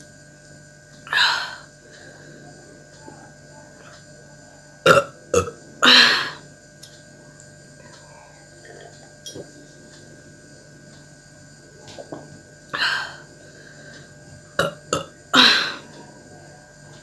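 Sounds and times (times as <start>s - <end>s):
woman belching: 1.1s - 1.7s, 4.8s - 6.4s, 12.7s - 13.2s, 14.6s - 15.9s.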